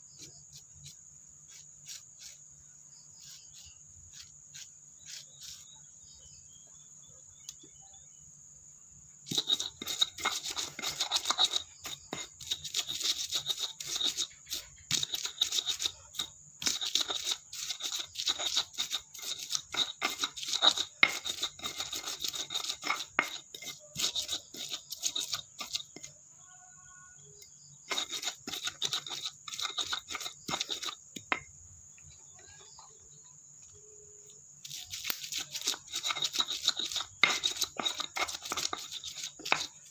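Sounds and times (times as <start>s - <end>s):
high insect trill: 0.0s - 39.9s
scratching and tearing vegetables: 34.6s - 39.9s.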